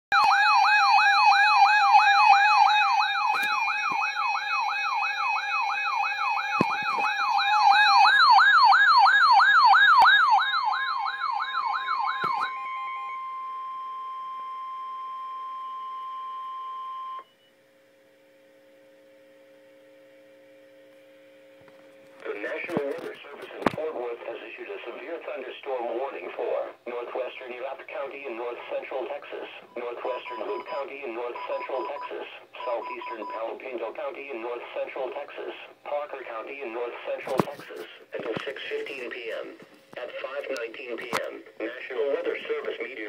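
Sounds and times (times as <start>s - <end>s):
electronic alert siren warbling: 0.1s - 17.3s
faint hum: 11.6s - 43.0s.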